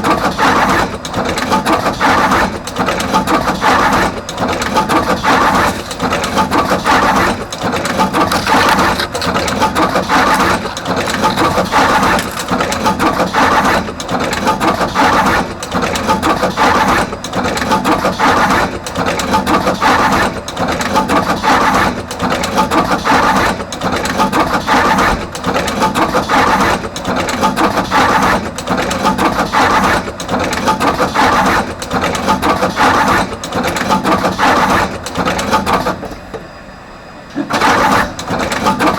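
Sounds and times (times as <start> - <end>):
wire crimping machine cycling: 4.3 - 14.4.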